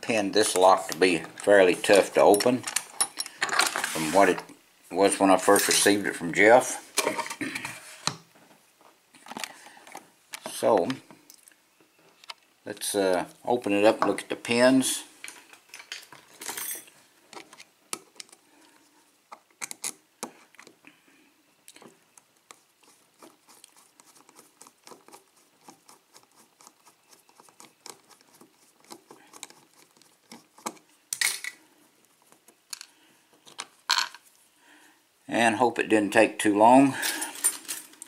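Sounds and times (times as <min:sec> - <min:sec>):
lock parts clicking and clinking: 0:00.8 - 0:03.8, 0:19.3 - 0:20.0.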